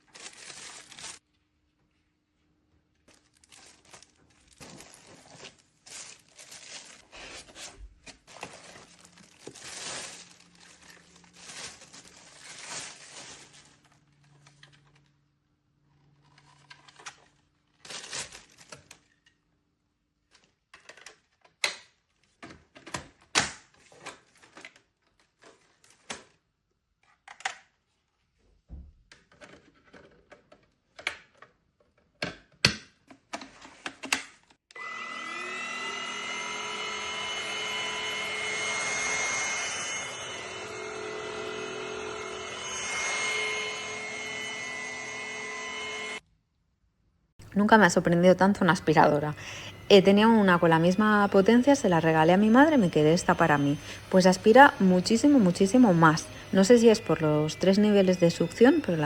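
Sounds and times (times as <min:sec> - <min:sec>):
packaging rustling and tearing: 0:00.0 - 0:01.2, 0:03.1 - 0:15.1, 0:16.1 - 0:19.3, 0:23.7 - 0:26.4.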